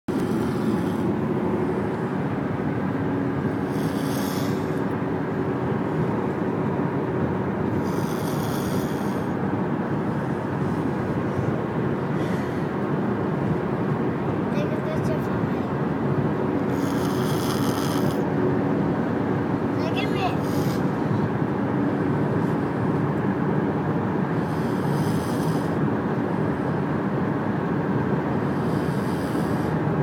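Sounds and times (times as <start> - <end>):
boy snoring: 0.1 - 1.2, 3.4 - 4.9, 7.7 - 9.4, 16.6 - 18.3, 19.8 - 21.0, 24.4 - 25.8, 28.4 - 29.8
car road and engine noise: 0.1 - 30.0.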